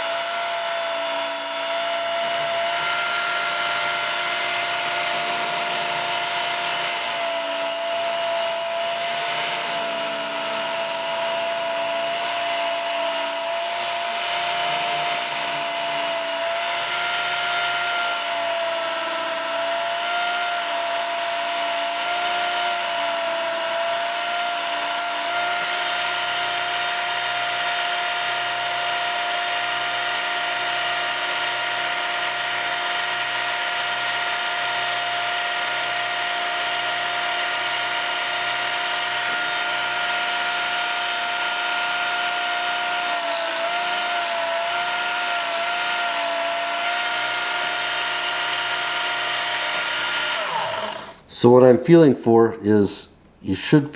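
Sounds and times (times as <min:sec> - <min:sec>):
belt sharpener motor whining: 0:00.0 - 0:51.3
abrasive belt grinding steel: 0:35.6 - 0:51.3.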